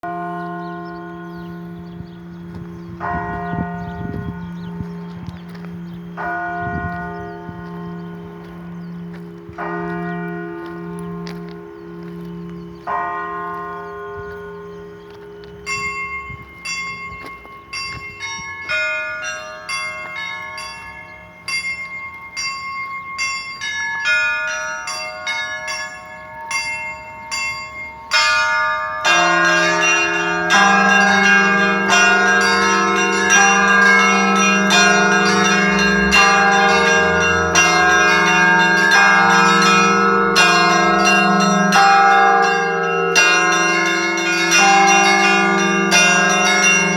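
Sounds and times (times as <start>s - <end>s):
heavy bells ringing: 0.0s - 46.9s
large bell humming: 0.0s - 46.9s
small bells struck rhythmically: 12.8s - 46.9s.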